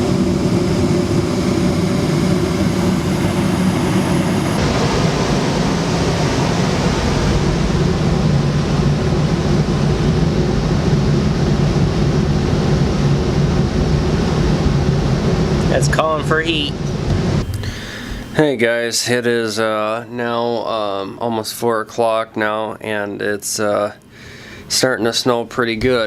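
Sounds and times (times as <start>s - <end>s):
furnace blower humming: 0.0s - 26.0s.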